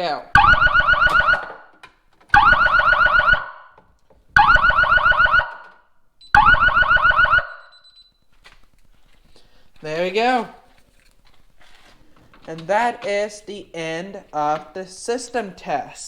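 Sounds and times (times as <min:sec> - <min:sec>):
fire alarm sounder blasts: 0:00.3 - 0:08.3.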